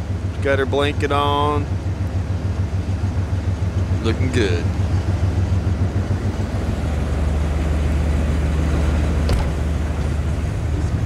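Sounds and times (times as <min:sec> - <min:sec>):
wind buffeting microphone: 0:04.8 - 0:11.0.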